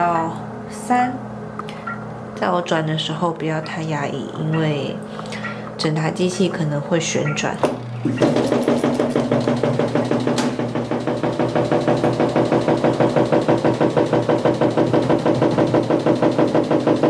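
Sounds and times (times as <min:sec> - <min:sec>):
washing machine spin motor throbbing: 0:00.0 - 0:17.0.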